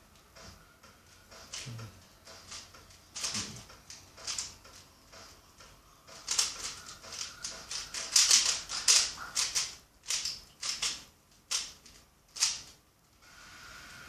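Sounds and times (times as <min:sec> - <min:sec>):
puzzle cube layers clicking: 0:02.4 - 0:05.4, 0:06.2 - 0:12.8.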